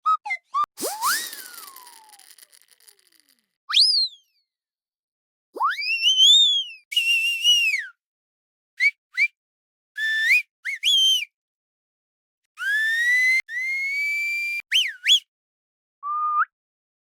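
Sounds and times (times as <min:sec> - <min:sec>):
whistle sound effects: 0:00.1 - 0:02.2, 0:05.6 - 0:07.8, 0:12.6 - 0:15.3.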